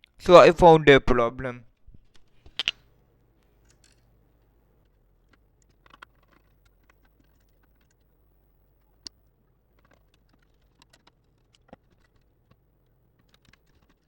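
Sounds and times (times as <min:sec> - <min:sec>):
laptop parts clicking: 0:02.0 - 0:02.8, 0:03.6 - 0:04.1, 0:04.8 - 0:08.2, 0:08.8 - 0:14.0.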